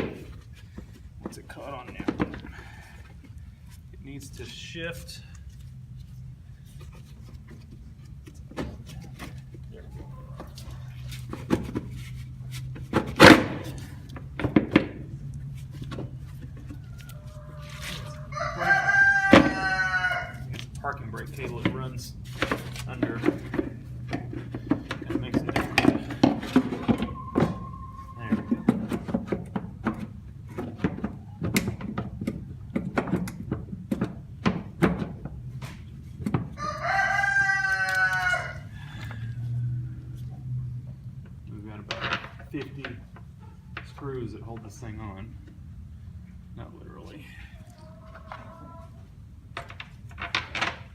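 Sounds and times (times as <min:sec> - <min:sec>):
knocks and clunks of parts: 0:00.0 - 0:03.4, 0:06.8 - 0:09.7, 0:10.4 - 0:16.9, 0:20.5 - 0:36.6, 0:40.9 - 0:44.8, 0:49.5 - 0:50.9
steady low hum: 0:00.0 - 0:36.6
rooster crowing: 0:16.7 - 0:20.5, 0:26.8 - 0:28.9, 0:36.6 - 0:39.5, 0:47.7 - 0:49.0.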